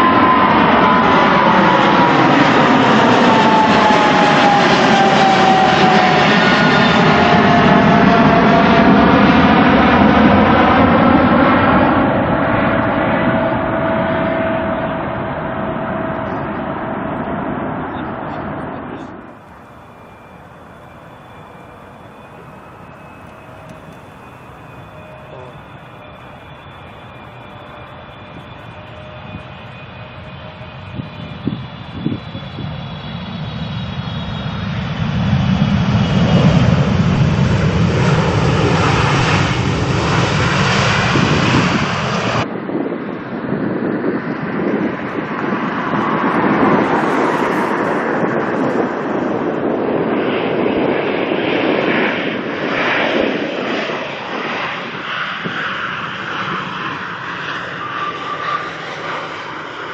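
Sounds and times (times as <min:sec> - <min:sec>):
jet airliner engine noise: 0:00.0 - 0:59.9
faint high whine: 0:17.9 - 0:35.0.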